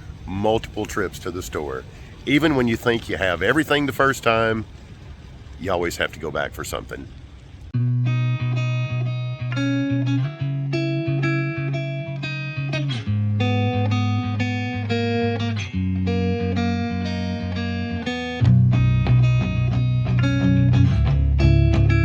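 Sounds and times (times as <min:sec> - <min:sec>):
bass line: 0:07.7 - 0:22.0
plucked guitar melody: 0:07.8 - 0:22.0.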